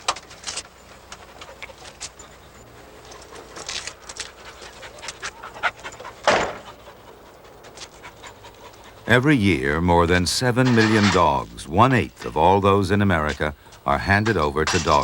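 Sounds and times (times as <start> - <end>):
dog panting: 0.8 - 9.8.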